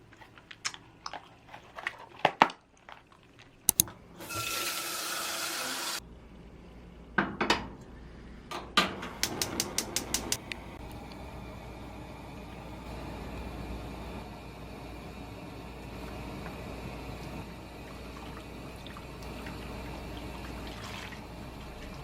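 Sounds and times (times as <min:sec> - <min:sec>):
quick clicks: 0:03.7 - 0:03.9
tap running: 0:03.7 - 0:04.6.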